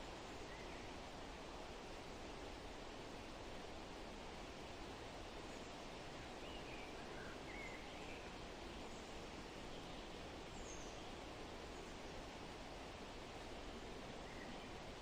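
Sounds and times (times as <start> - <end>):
wind in trees: 0.0 - 15.0
faint bird chirps: 5.5 - 12.0, 14.1 - 14.8.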